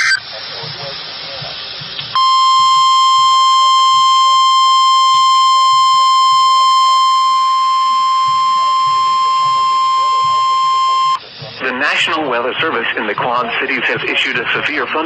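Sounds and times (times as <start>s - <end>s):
steady high alarm tone: 2.2s - 11.2s.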